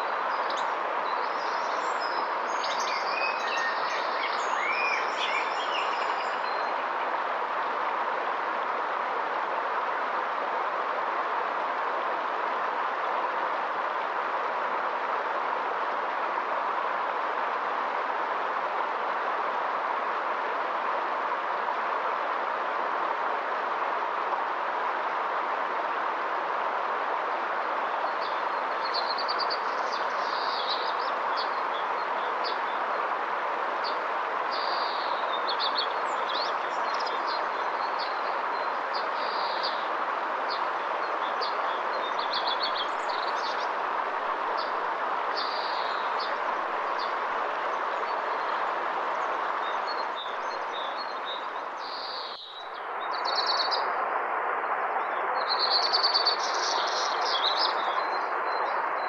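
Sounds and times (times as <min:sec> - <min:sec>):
river flowing: 0:00.0 - 0:59.0
small birds chirping: 0:33.8 - 0:39.9, 0:44.6 - 0:47.2, 0:49.6 - 0:53.8.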